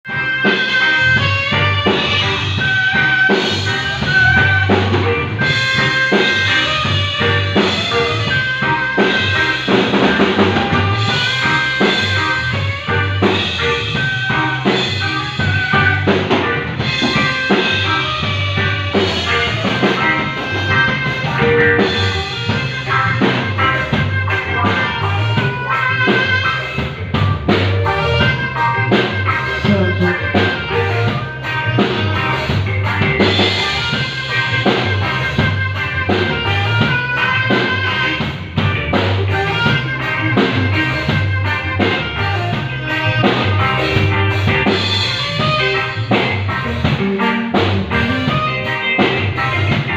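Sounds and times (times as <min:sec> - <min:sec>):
band playing a song: 0:00.0 - 0:49.9
drum kit beat: 0:00.0 - 0:49.9.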